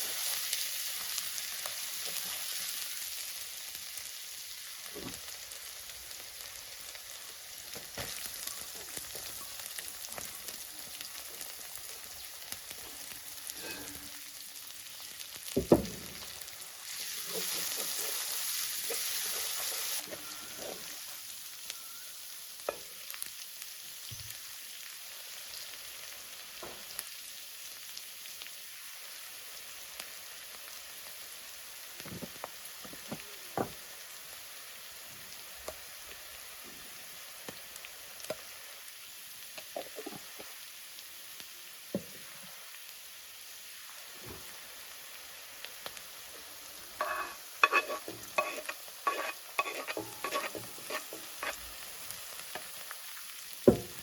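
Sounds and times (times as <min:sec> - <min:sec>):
food sizzling in a pan: 0:00.0 - 0:54.0
utensil knocking and scraping: 0:47.0 - 0:51.6.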